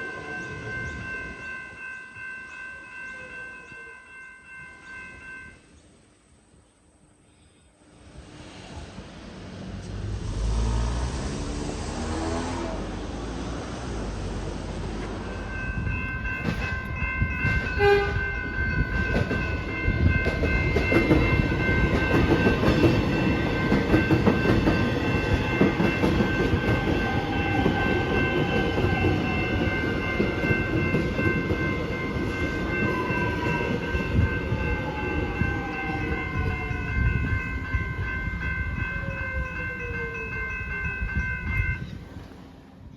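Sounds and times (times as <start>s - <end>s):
train wheels clattering on rails: 14.8s - 40.3s.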